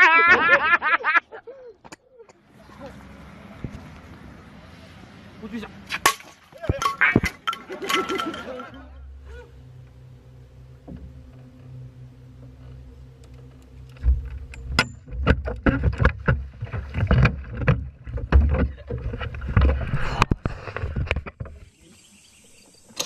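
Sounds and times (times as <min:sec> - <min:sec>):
boat motor humming: 0:06.8 - 0:20.2
knocks and thuds against boat: 0:10.8 - 0:11.4, 0:14.0 - 0:19.8.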